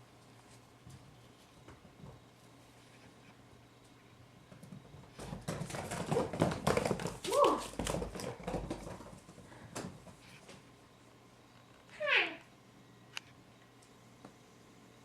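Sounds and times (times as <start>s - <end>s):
kittens' paws pattering: 4.5s - 10.7s
kitten crying: 12.0s - 12.4s.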